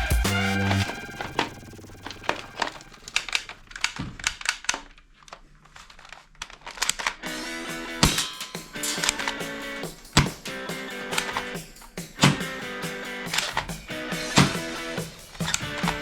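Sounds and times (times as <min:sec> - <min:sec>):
background music: 0:00.0 - 0:03.4, 0:07.3 - 0:16.0
plastic toy gun clicking: 0:03.1 - 0:07.3, 0:08.0 - 0:11.6, 0:13.3 - 0:16.0.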